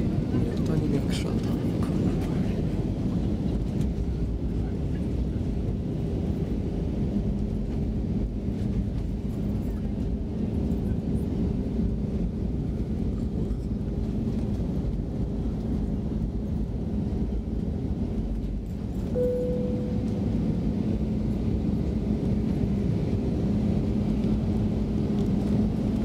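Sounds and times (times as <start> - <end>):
jet engine drone: 0.0 - 26.0
low even hum: 18.8 - 22.7.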